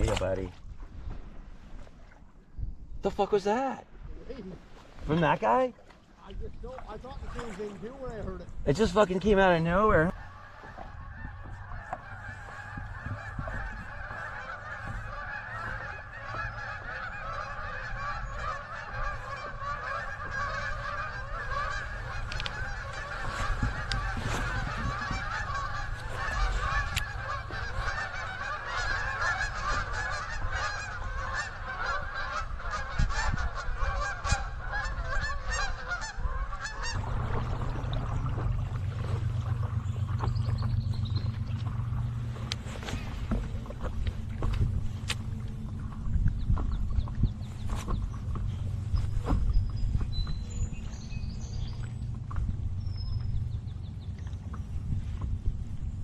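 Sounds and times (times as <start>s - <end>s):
low rumble: 6.3s - 56.0s
geese honking: 8.3s - 46.0s.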